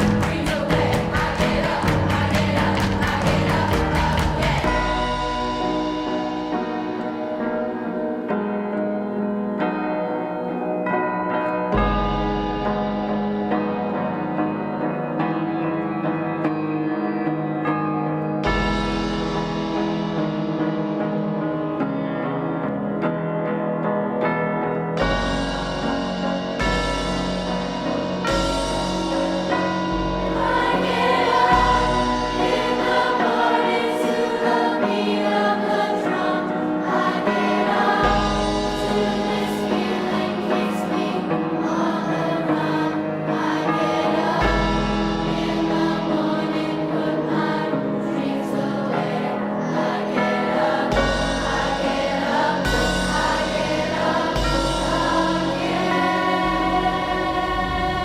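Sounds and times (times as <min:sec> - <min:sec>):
deep bass notes: 0:00.0 - 0:06.0
sustained chords: 0:00.0 - 0:08.2, 0:25.1 - 0:41.6, 0:50.9 - 0:58.0
choir-like singing: 0:00.0 - 0:09.4, 0:28.3 - 0:58.0.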